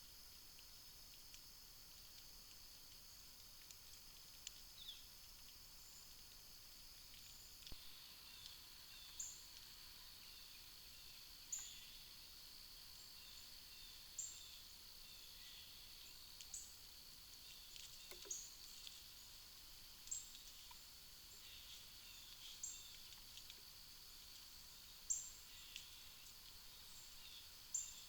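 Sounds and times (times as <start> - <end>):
faint clicks: 0.3 - 9.7, 17.3 - 20.9, 22.2 - 24.5, 25.7 - 26.6.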